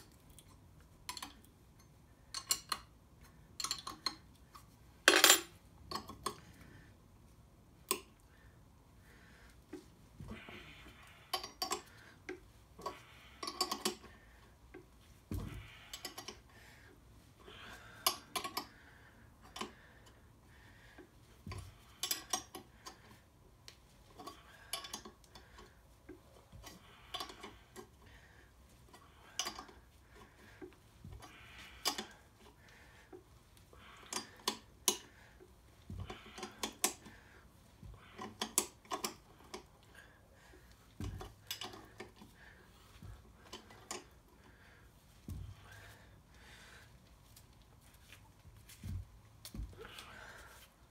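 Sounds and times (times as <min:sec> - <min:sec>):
metal tools clinking: 0:05.1 - 0:06.2.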